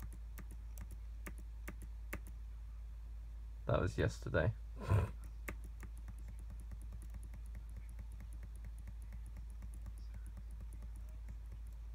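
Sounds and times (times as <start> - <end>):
light steady clicks: 0.0 - 2.4, 5.4 - 11.9
low steady hum: 0.0 - 11.9.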